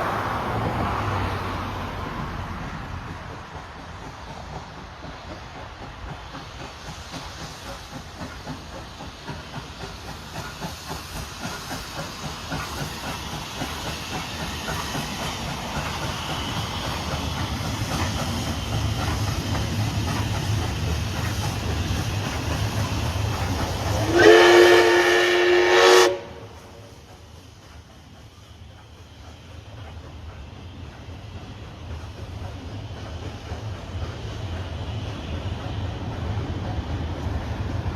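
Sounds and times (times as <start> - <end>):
steam locomotive hissing and rumbling: 0.0 - 37.9
steam whistle blast: 23.9 - 26.9.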